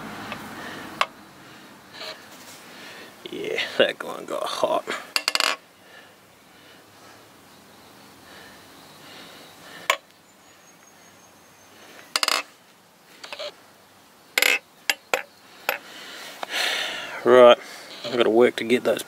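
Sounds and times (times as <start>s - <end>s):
metal engine parts clinking: 5.1s - 5.6s, 14.4s - 15.8s.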